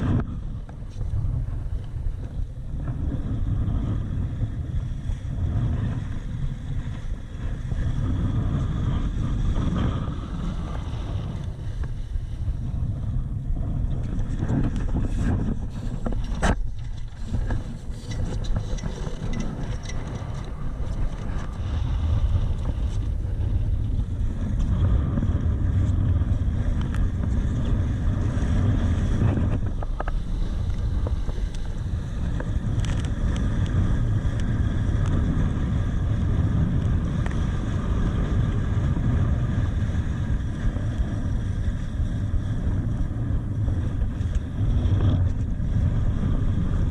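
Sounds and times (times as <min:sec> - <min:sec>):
strong wind buffeting microphone: 0:00.0 - 0:46.9.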